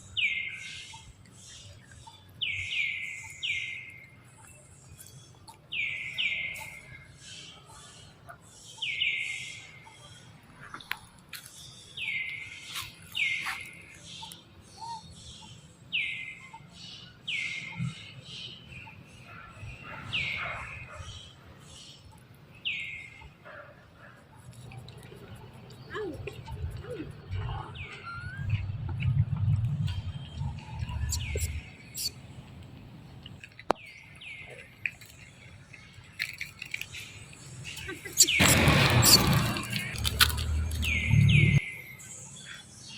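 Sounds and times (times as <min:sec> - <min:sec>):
birds chirping: 0:11.5 - 0:23.4, 0:25.0 - 0:42.9
low rumble: 0:27.3 - 0:33.3
squeaky animal calls: 0:27.6 - 0:28.6, 0:30.9 - 0:32.2, 0:37.9 - 0:40.1.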